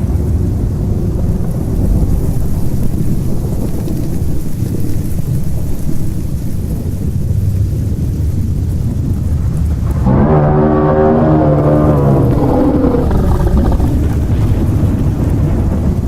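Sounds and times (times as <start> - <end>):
deep continuous rumbling: 0.0 - 16.0
low drone with overtones: 7.8 - 16.0.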